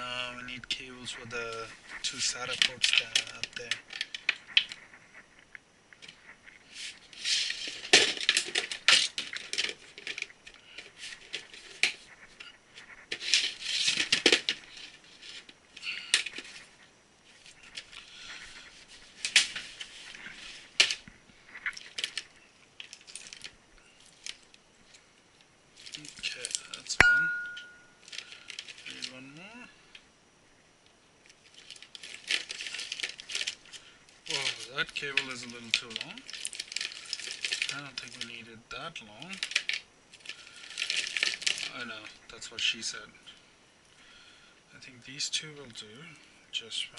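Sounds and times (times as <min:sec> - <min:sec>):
small parts clicking and clinking: 0:19.2 - 0:25.0, 0:31.2 - 0:38.4.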